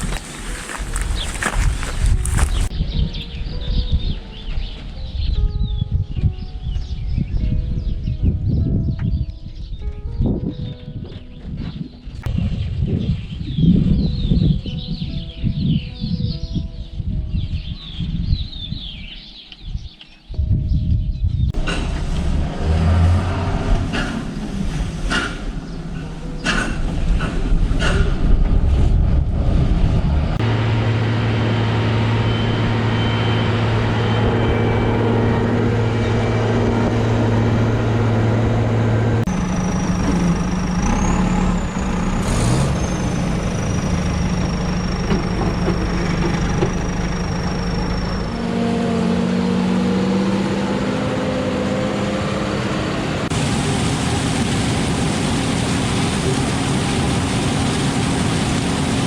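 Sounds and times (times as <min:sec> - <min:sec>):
heavy machinery engine running: 0:00.0 - 0:02.7, 0:21.6 - 0:59.0
knocks and clatter: 0:44.0 - 0:47.0.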